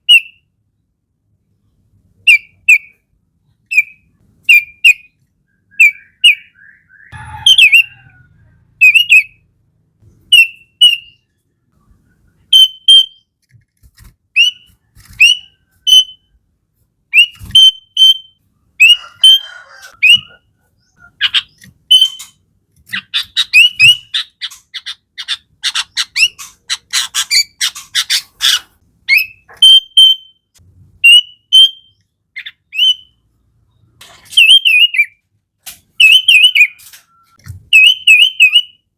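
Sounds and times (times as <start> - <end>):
bird singing whistled notes: 3.7 - 8.2, 8.8 - 9.4, 10.3 - 11.3, 12.5 - 13.3, 14.4 - 16.4, 29.1 - 33.8, 36.0 - 38.8.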